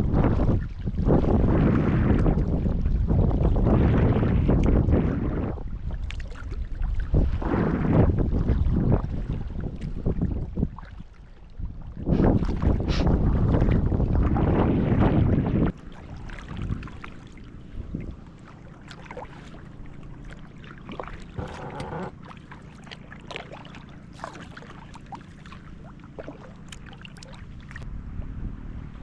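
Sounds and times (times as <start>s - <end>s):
wind buffeting microphone: 0.0s - 22.3s
paddle splashes and drips: 0.1s - 15.1s, 15.7s - 27.9s.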